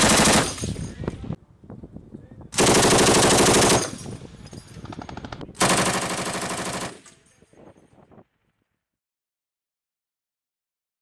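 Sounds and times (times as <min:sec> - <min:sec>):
heavy machine gun firing: 0:00.0 - 0:00.7, 0:02.6 - 0:04.0, 0:05.1 - 0:07.0.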